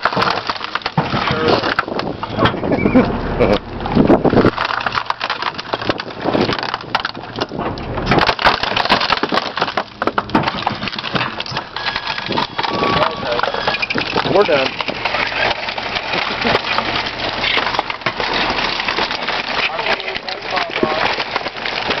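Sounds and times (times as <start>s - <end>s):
compactor crushing a microwave: 0.0s - 22.0s.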